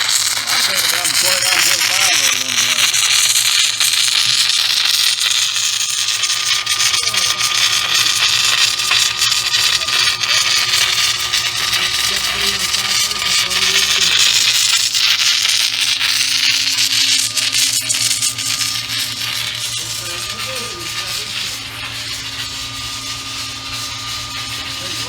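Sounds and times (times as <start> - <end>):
welding arc hiss and crackle: 0.0 - 25.0.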